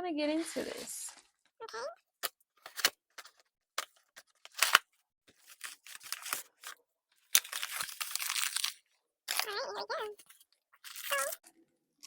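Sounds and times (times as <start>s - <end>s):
packaging clicks and rustles: 2.2s - 11.4s
cutting or tearing packaging: 2.6s - 11.4s.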